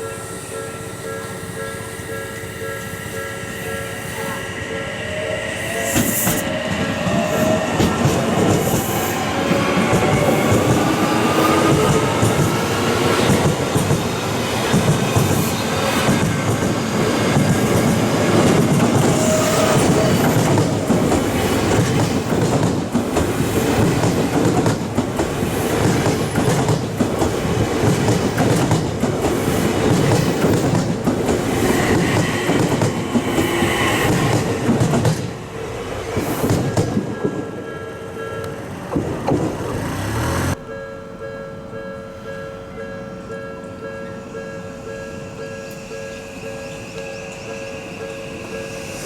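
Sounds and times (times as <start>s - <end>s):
electric train passing: 0.0s - 49.0s
wheels clacking over rail joints: 9.8s - 35.4s.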